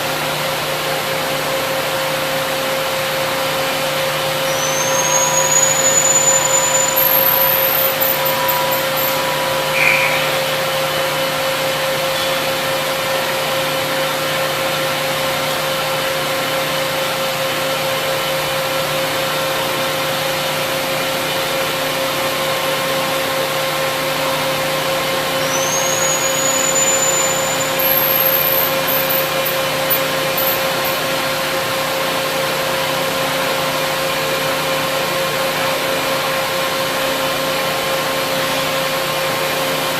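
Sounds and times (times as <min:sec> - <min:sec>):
machine hum: 0:00.2 - 0:39.9
spindle whine: 0:02.9 - 0:16.1, 0:25.3 - 0:32.4.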